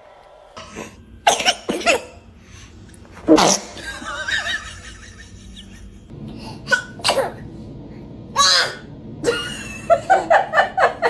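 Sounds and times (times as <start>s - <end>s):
baby laughing: 6.3s - 7.4s
baby sneezing: 6.7s - 7.4s.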